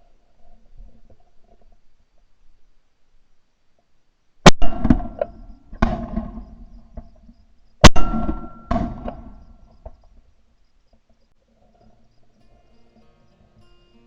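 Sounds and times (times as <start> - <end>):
gunshot cracks: 4.5 - 6.4, 7.8 - 9.4
dull thuds: 4.5 - 10.2.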